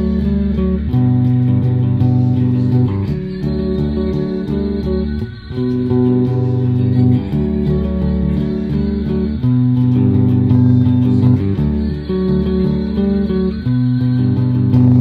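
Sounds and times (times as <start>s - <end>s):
bass guitar strummed chords: 0.0s - 15.0s.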